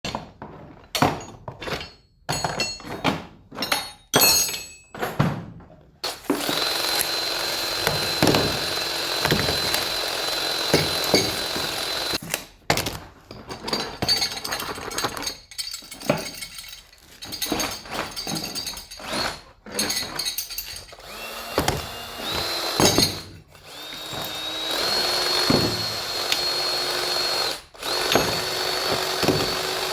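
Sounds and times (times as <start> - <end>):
power drill running: 6.0 - 12.2, 20.9 - 29.9.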